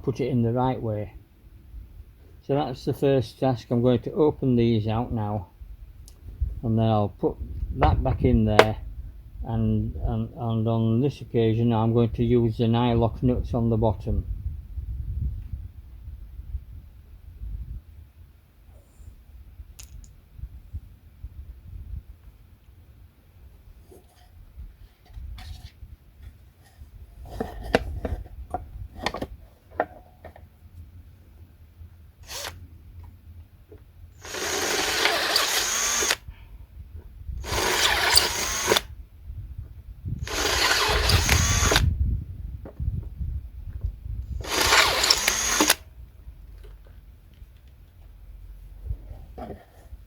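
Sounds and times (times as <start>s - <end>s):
handling clicks and knocks: 8.6s - 8.8s
power drill drilling: 32.2s - 32.6s, 34.2s - 36.2s, 37.4s - 38.9s, 40.2s - 41.8s, 44.4s - 45.8s.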